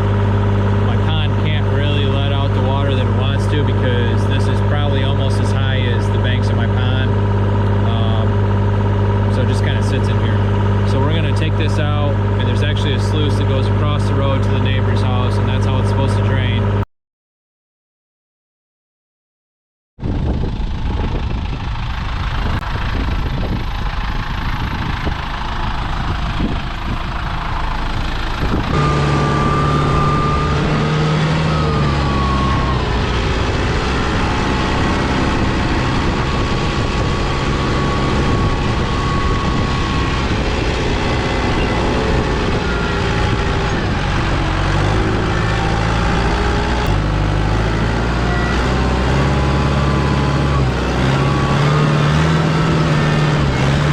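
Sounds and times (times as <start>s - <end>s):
excavator diesel engine running: 0.0s - 16.8s, 20.0s - 53.9s
whine shifting in pitch: 0.0s - 16.8s, 20.0s - 53.9s.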